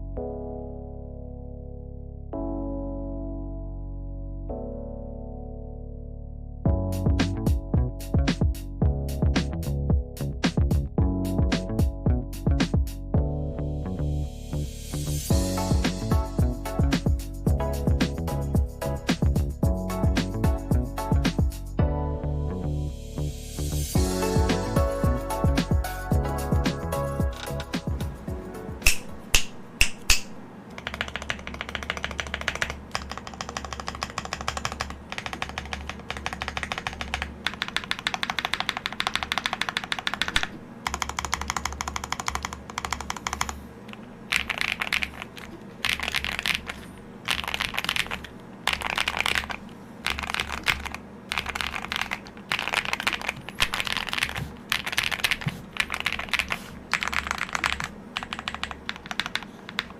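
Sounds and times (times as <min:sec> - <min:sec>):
mechanical keyboard typing: 0:28.9 - 0:43.6, 0:44.3 - 0:59.9.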